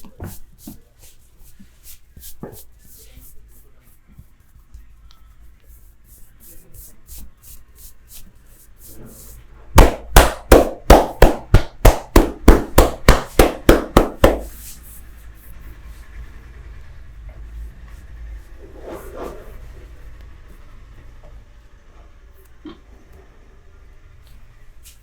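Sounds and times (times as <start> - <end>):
loud hand slaps: 9.8 - 14.5.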